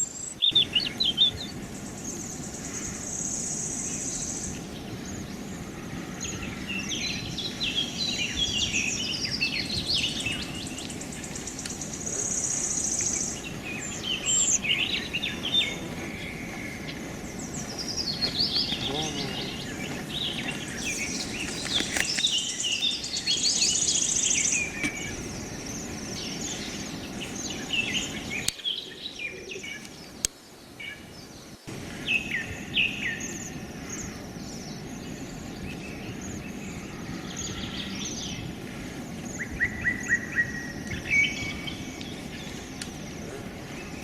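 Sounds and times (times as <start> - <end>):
low outdoor background hiss: 0.0 - 44.0
songbirds chirping and singing: 0.0 - 44.0
sharp clicks: 21.0 - 22.4.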